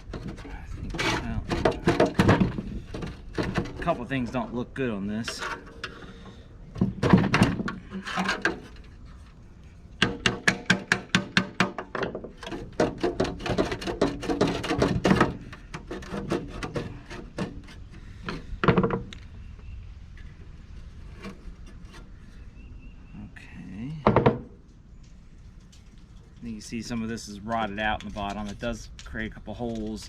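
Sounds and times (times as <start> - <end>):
metallic clicking and knocking: 10.0 - 17.6.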